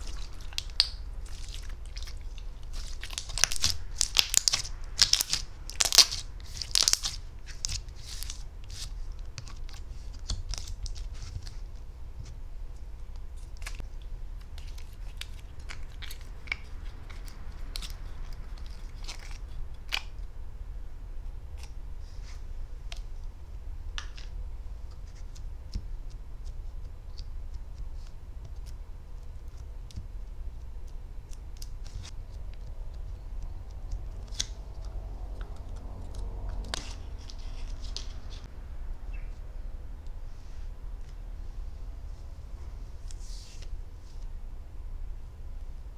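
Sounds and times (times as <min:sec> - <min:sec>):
sticky slime clicks and crackles: 0:00.0 - 0:08.4
steady low hum: 0:00.0 - 0:45.9.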